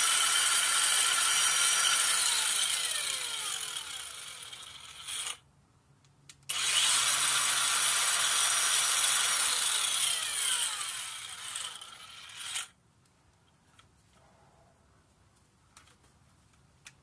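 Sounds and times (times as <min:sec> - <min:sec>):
angle grinder whining: 0:00.0 - 0:05.4, 0:06.5 - 0:12.7.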